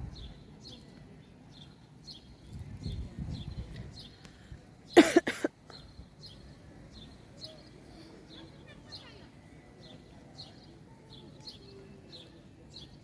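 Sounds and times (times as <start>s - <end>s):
person coughing: 5.0s - 5.5s.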